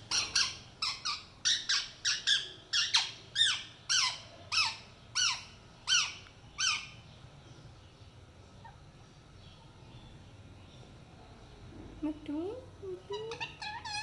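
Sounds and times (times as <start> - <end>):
parrot squawking: 0.1 - 7.0, 13.1 - 14.0.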